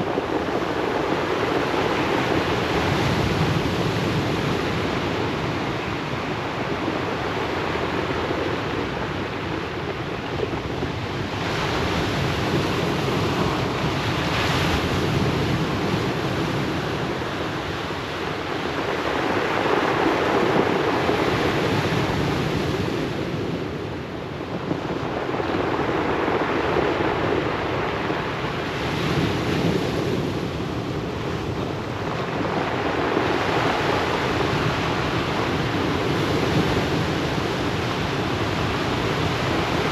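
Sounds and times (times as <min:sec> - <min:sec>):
ocean surf breaking: 0:11.0 - 0:39.9.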